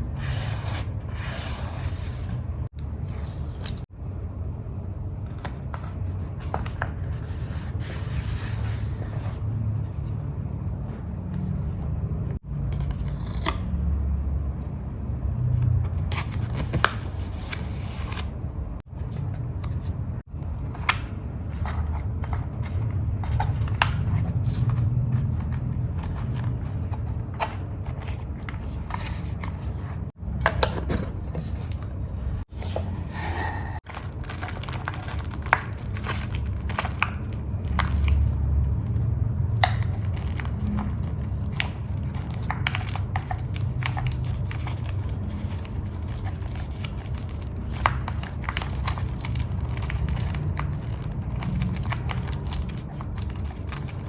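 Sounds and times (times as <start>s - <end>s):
paper rustling and crinkling: 15.8s - 38.4s, 39.6s - 54.0s.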